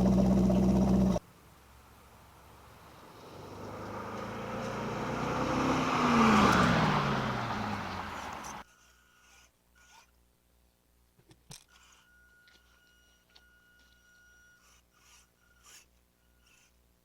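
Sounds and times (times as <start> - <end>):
car driving past: 2.6 - 8.6.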